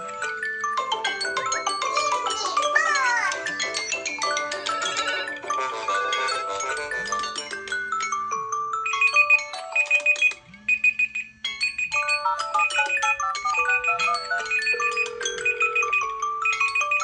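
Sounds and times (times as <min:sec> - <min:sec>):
mallet-like melodic ringtone: 0:00.0 - 0:17.0
high beeps: 0:08.9 - 0:17.0.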